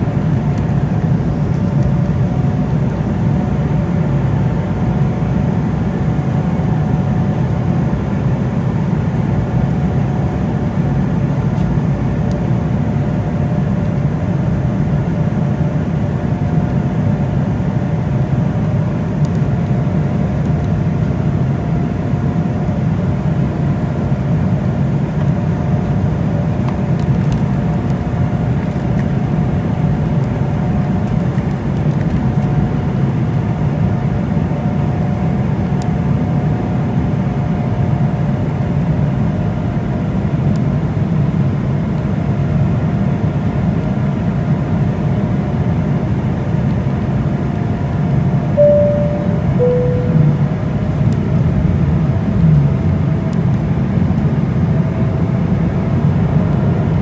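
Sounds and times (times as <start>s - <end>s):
faint whining tones: 48.6s - 50.8s.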